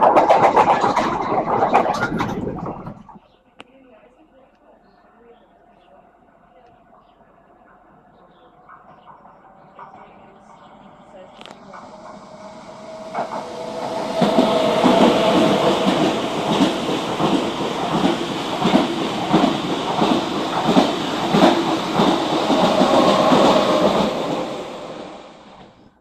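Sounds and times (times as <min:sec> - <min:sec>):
train wheels clacking over rail joints: 0:00.0 - 0:03.0, 0:11.4 - 0:25.7
train whine: 0:07.8 - 0:26.0.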